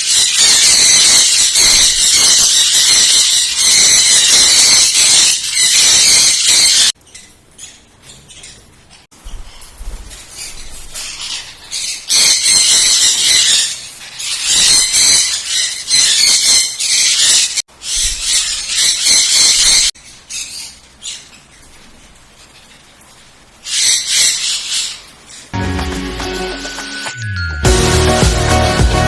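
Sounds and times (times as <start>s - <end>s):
parrots squawking harshly: 0.0s - 7.0s, 10.4s - 20.8s, 23.7s - 25.1s
parrot chirps: 0.0s - 8.6s, 10.5s - 21.4s.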